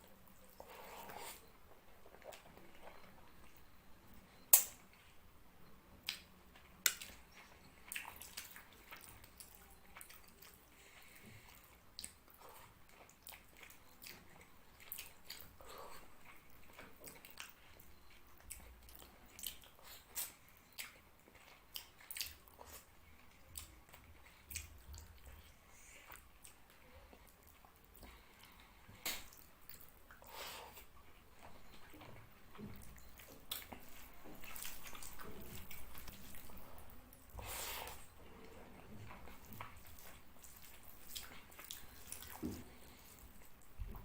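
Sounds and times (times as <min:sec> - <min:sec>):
mouth clicks and smacks: 0:04.5 - 0:04.9, 0:06.0 - 0:07.3, 0:29.0 - 0:30.9
wet chewing: 0:06.0 - 0:44.0.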